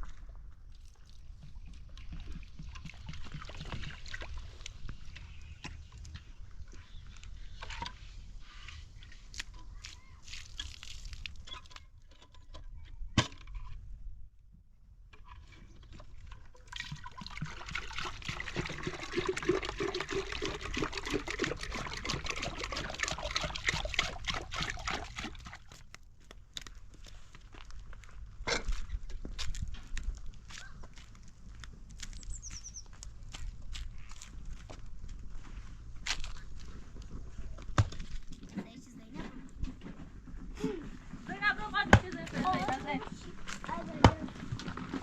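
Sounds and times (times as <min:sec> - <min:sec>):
water pouring and splashing: 0:00.0 - 0:05.4, 0:09.2 - 0:11.8, 0:15.8 - 0:25.9.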